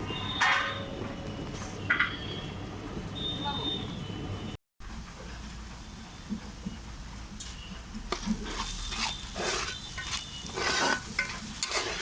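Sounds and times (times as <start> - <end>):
ladle scraping in a pot: 8.1 - 12.0.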